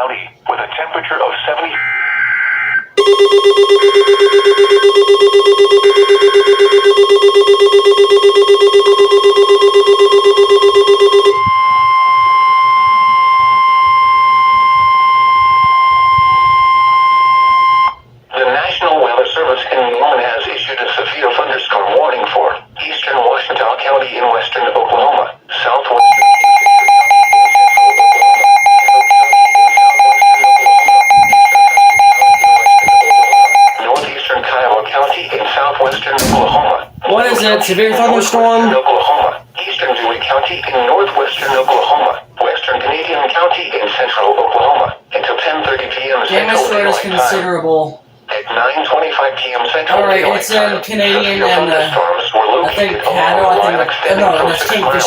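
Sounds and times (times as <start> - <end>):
steady warning tone: 1.7 - 18.1, 26.0 - 42.2
rapidly pulsing alarm beep: 1.8 - 18.0, 26.0 - 38.4.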